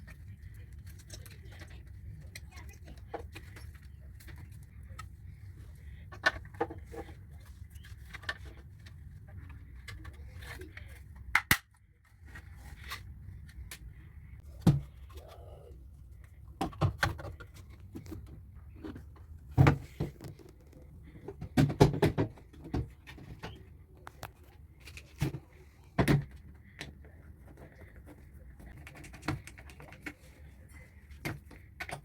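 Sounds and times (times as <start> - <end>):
low steady hum: 0.0 - 32.0.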